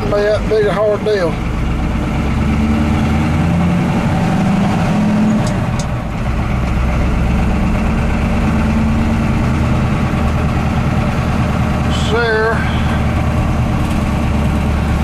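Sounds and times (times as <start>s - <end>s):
diesel engine idling: 0.0s - 15.0s.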